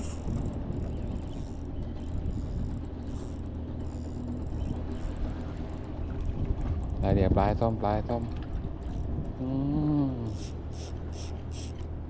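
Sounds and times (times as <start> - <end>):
steady low hum: 0.0 - 12.0
fishing reel ratcheting: 0.4 - 5.8, 10.2 - 11.9.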